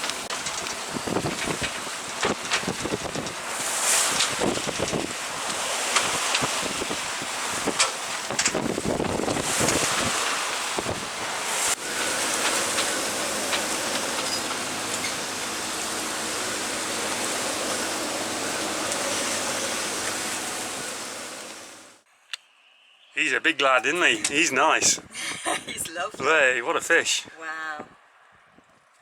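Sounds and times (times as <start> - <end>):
wind buffeting microphone: 0.0 - 21.9
heavy sea rushing: 0.0 - 22.0.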